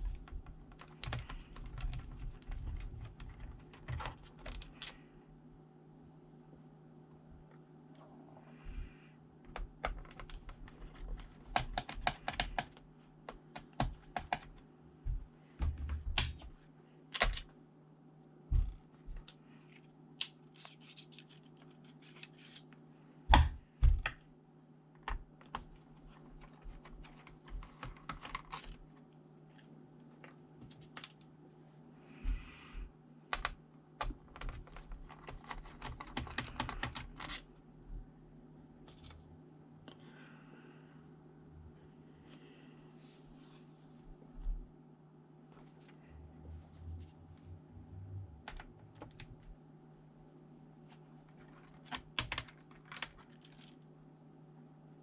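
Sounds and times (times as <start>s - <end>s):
hands handling plastic laptop case: 0.0s - 5.0s, 25.0s - 29.0s, 33.3s - 37.5s, 48.4s - 49.5s
faint low hum: 0.0s - 55.0s.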